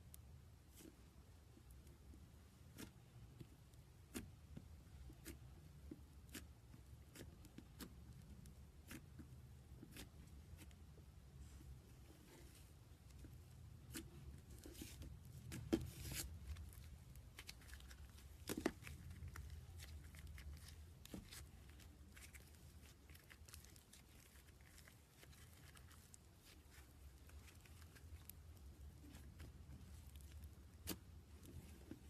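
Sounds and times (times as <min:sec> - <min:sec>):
slime sticky crackles: 0:14.8 - 0:32.0.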